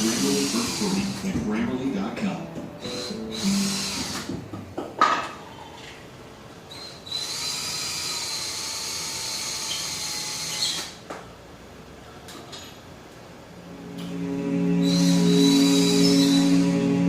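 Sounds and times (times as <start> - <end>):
power drill whining: 0.0 - 1.3, 2.8 - 4.4, 6.7 - 11.0, 14.8 - 16.8.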